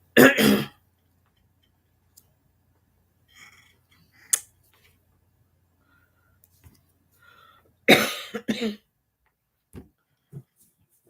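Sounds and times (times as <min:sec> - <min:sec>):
woman coughing: 0:00.2 - 0:00.8, 0:07.9 - 0:08.8.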